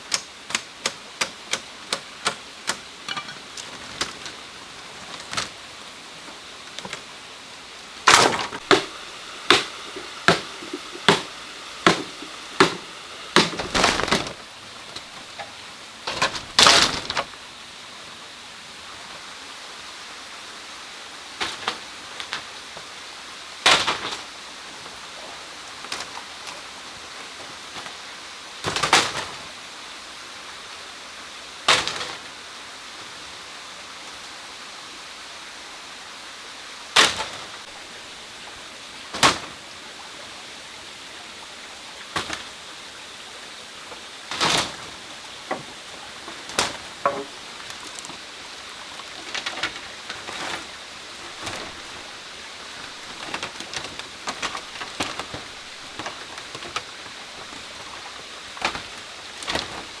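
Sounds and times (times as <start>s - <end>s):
background hiss: 0.0s - 60.0s
rustling scrapes: 3.1s - 7.1s, 44.3s - 60.0s
tool knocking on wood: 8.6s - 14.2s.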